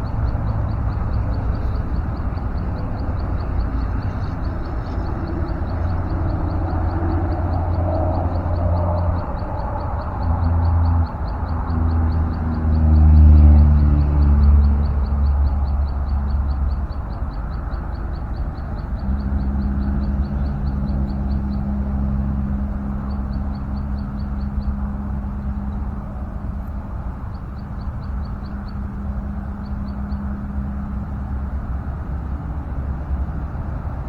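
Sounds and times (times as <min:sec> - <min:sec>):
engine humming: 0:00.0 - 0:34.0
rapid high-pitched ticking: 0:00.0 - 0:34.0.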